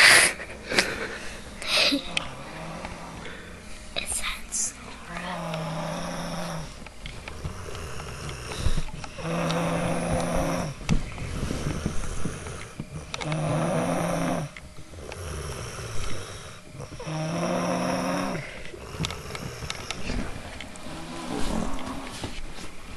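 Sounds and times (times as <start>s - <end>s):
person snoring loudly: 0.0s - 3.5s, 5.4s - 22.1s
quiet breathing: 0.0s - 22.7s.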